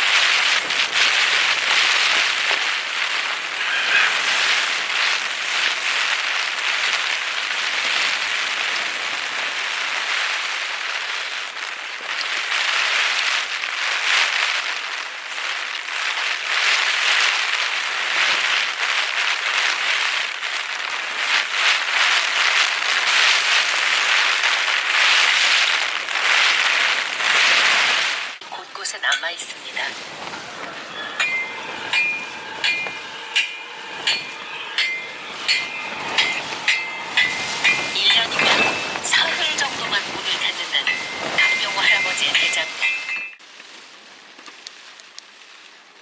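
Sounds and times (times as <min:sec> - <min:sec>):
heavy rain pattering: 0:00.0 - 0:46.0.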